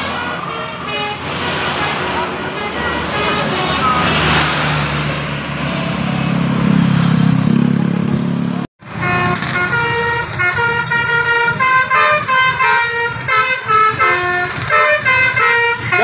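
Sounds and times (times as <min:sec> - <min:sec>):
multi-tone bus horn tune: 0:00.0 - 0:04.9, 0:08.8 - 0:16.0
bus engine rumbling: 0:00.0 - 0:16.0.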